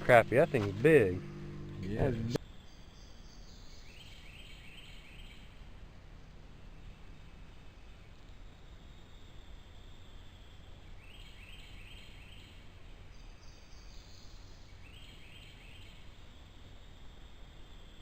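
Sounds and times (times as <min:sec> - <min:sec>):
low rumble: 0:00.0 - 0:02.4
small bird singing: 0:00.0 - 0:05.6, 0:10.8 - 0:16.1.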